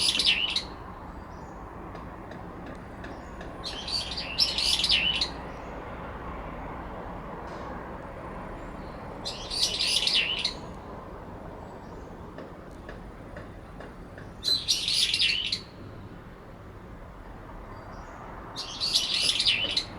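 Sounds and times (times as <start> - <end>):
birds calling harshly: 0.0 - 1.6, 3.0 - 5.9, 8.8 - 10.8, 14.2 - 16.0, 18.0 - 19.9.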